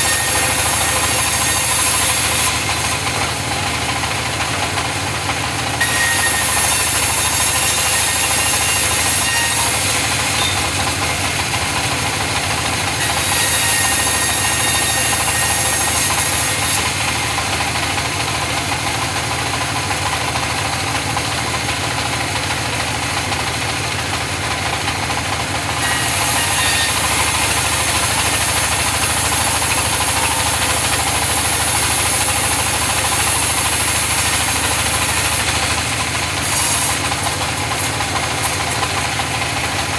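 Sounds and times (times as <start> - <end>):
saw blade hissing through wood: 0.0 - 3.3, 5.8 - 17.2, 25.8 - 39.0
saw engine running: 0.0 - 39.9.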